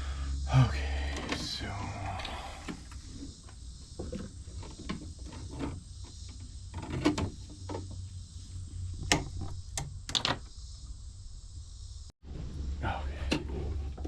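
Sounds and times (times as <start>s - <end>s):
steady low rumble: 11.0s - 13.6s.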